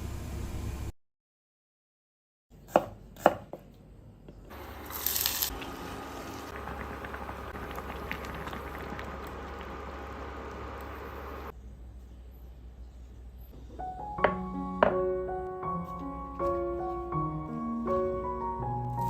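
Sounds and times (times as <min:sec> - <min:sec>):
knife chopping on cutting board: 0:02.7 - 0:03.6
sizzling hiss with crackles: 0:04.5 - 0:11.5.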